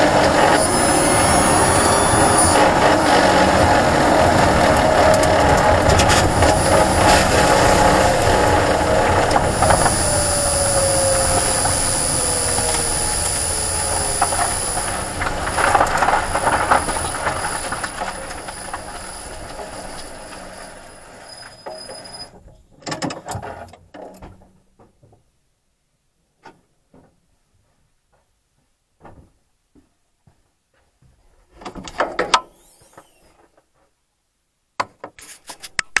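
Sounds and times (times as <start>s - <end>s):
falling electric motor whine: 0.0s - 22.3s
road and drivetrain noise: 0.0s - 22.4s.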